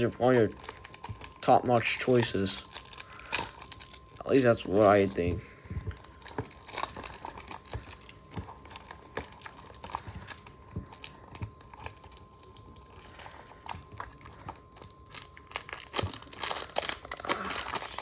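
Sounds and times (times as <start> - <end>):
plastic wrapper crinkling: 0.0 - 18.0.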